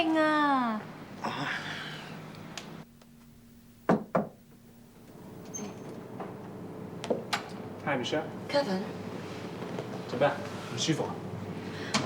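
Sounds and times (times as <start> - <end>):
sharp knocks on wood: 3.9 - 4.4.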